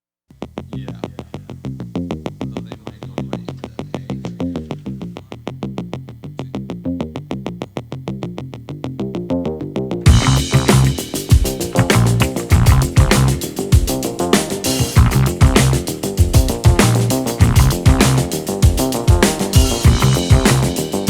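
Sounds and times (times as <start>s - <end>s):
drum and bass beat: 0.4s - 6.8s, 10.1s - 21.0s
synthesizer playing fast notes: 10.1s - 21.0s.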